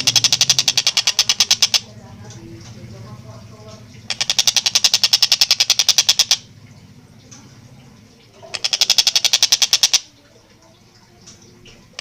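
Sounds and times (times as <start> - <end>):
kingfisher rapid chattering call: 0.0 - 1.9, 4.1 - 6.5, 8.4 - 10.1.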